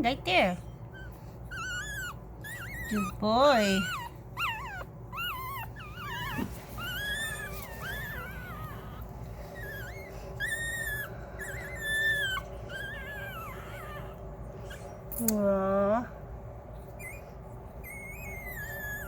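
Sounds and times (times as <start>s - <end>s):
puppies squealing and whimpering: 0.6s - 15.1s, 16.7s - 19.0s.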